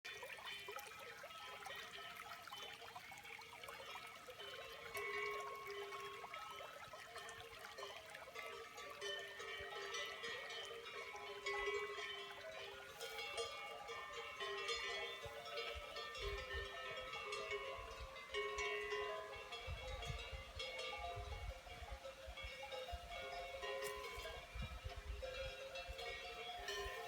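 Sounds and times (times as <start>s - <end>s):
cowbells clanking: 0.1s - 27.0s.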